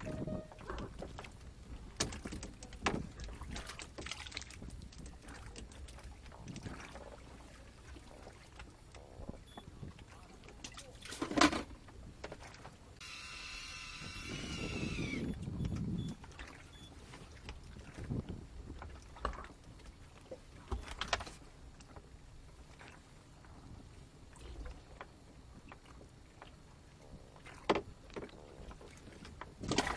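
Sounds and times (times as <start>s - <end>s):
knocks and clicks on boat: 0.0s - 4.1s, 15.0s - 19.5s, 27.6s - 28.3s
water lapping: 0.0s - 11.2s, 14.6s - 29.9s.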